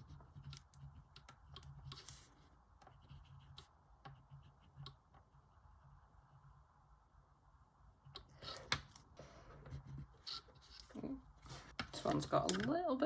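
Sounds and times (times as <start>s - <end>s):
pen scratching on paper: 0.0s - 5.4s.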